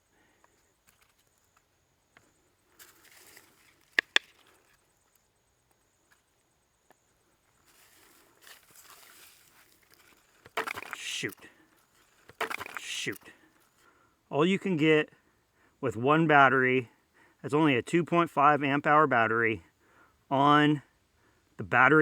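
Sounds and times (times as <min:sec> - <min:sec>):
soft rustling and shuffling: 0:07.4 - 0:10.5
sharp knocks: 0:12.3 - 0:13.0.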